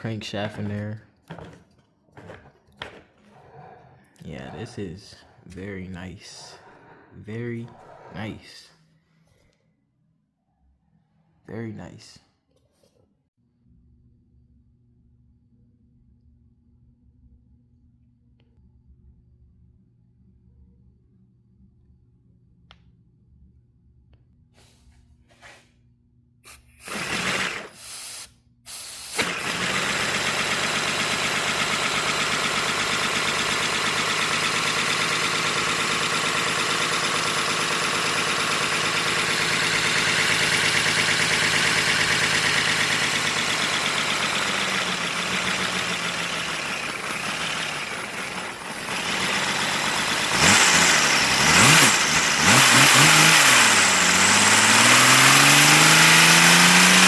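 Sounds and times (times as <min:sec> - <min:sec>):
clicks and air puffs: 0:26.4 - 0:29.8
air-powered model engine running: 0:26.5 - 0:57.0.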